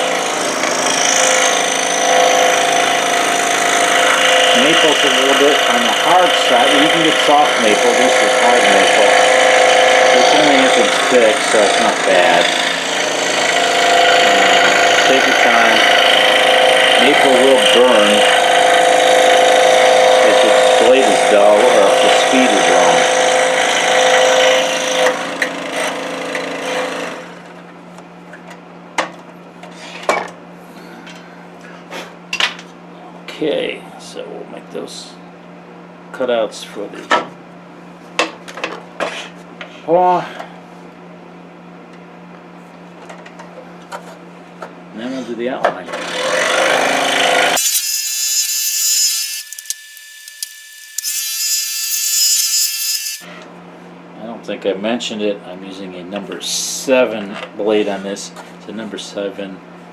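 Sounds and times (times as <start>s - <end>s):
scroll saw cutting wood: 0.0s - 27.0s, 46.0s - 53.3s.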